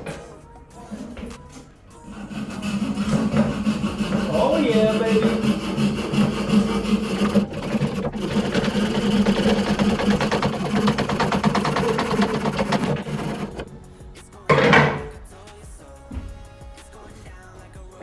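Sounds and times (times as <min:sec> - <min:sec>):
small power saw buzzing: 0:02.0 - 0:13.7.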